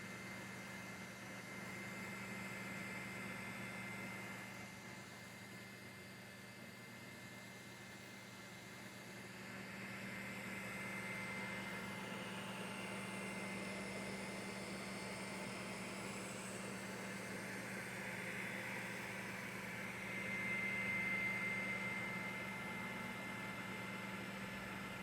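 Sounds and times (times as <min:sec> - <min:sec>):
fan hum: 0:09.0 - 0:25.0.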